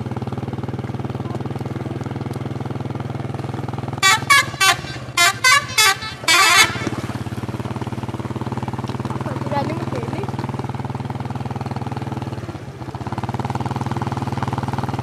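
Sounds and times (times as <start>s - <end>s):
idling engine hum: 0.0s - 15.0s
multi-tone musical bus horn: 4.0s - 7.7s.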